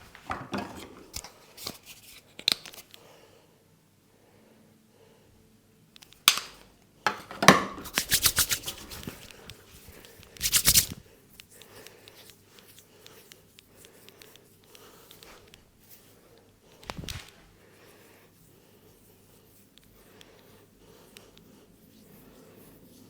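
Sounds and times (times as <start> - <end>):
hands slapping a head: 7.5 - 9.6, 10.2 - 11.0, 16.8 - 17.4.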